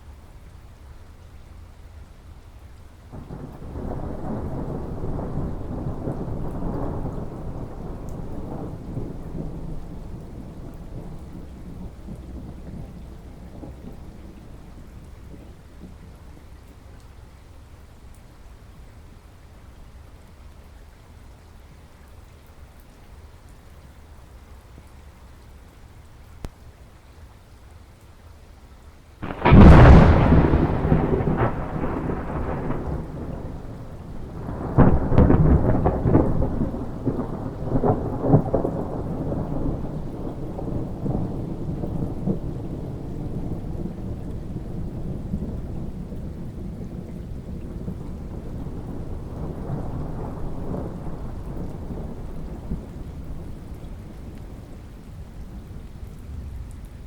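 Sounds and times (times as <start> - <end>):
steady rain: 0.0 - 57.0
thunder rumbling: 3.1 - 16.4, 29.2 - 56.7.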